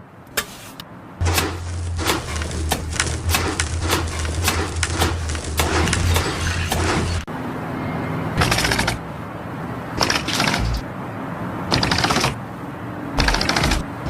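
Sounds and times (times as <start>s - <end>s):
low hum: 1.2s - 7.3s
sharp knocks or cracks: 1.2s - 7.3s.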